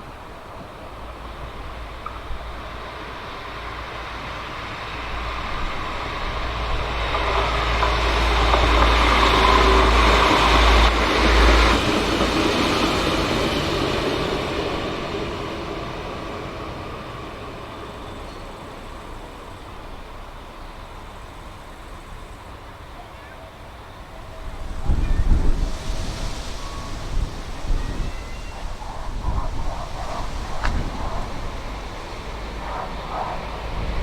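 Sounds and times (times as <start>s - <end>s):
train passing by: 0.0s - 34.0s.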